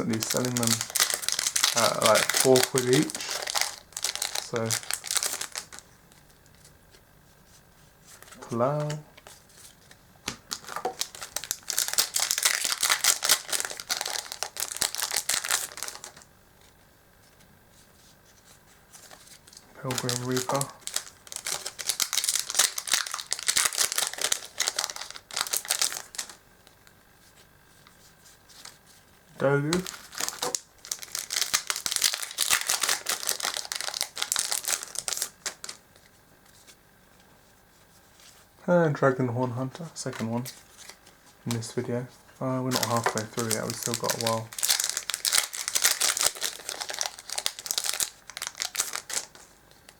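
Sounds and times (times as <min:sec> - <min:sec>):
foil wrapper crinkling and tearing: 0:00.0 - 0:05.9, 0:08.2 - 0:16.3, 0:18.9 - 0:26.9, 0:29.4 - 0:36.1, 0:42.6 - 0:49.9.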